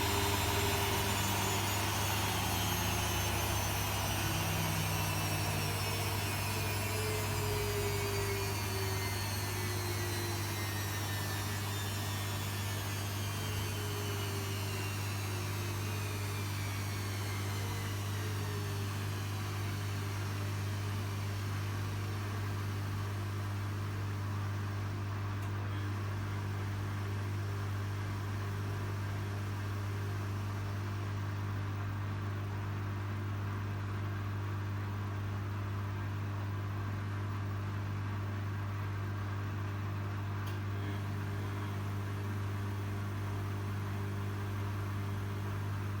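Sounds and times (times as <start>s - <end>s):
washing machine motor whine: 0.0s - 25.0s, 40.5s - 46.0s.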